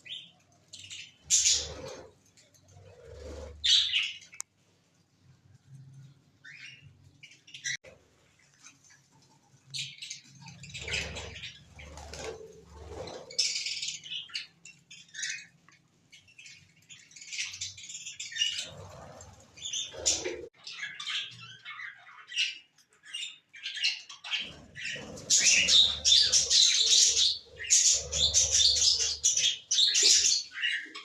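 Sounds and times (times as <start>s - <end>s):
cage birds chirping: 0.0s - 31.0s
wing flapping: 11.0s - 13.5s.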